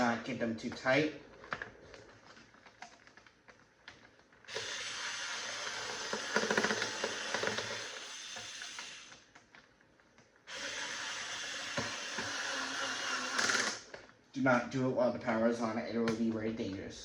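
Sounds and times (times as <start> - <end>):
screwdriver ratcheting: 3.9 - 9.6, 10.5 - 13.9.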